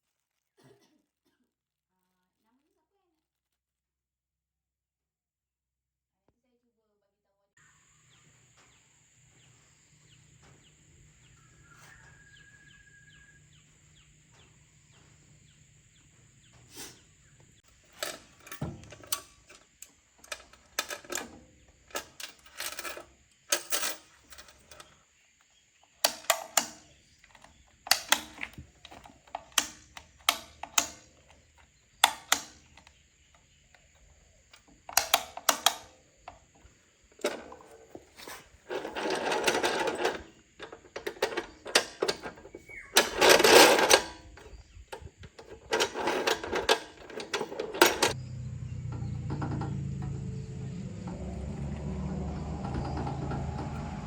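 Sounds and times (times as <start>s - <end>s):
faint low hum: 47.4s - 54.0s.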